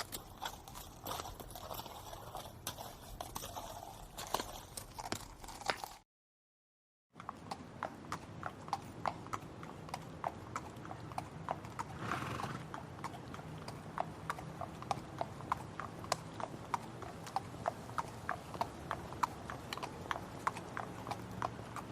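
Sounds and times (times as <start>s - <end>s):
horse hooves clip-clopping: 0.0s - 6.0s, 7.2s - 21.9s
horse breathy snort: 11.9s - 12.6s.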